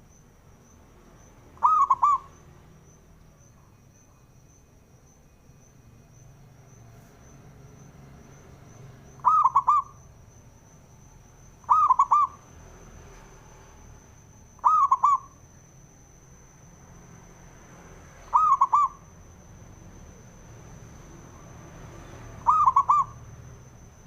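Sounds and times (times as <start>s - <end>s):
dove cooing: 1.6s - 2.3s, 9.2s - 10.0s, 11.6s - 12.4s, 14.6s - 15.3s, 18.3s - 19.0s, 22.4s - 23.2s.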